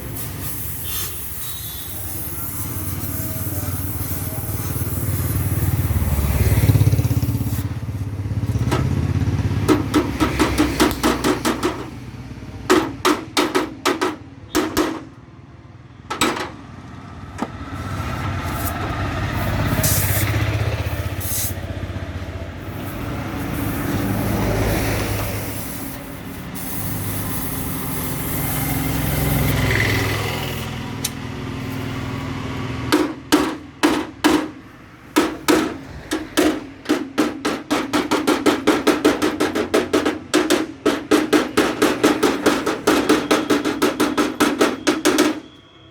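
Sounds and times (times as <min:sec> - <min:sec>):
hammer clanging on metal: 0:09.6 - 0:12.0, 0:12.6 - 0:15.2, 0:16.1 - 0:16.6, 0:32.9 - 0:34.6, 0:35.2 - 0:45.6.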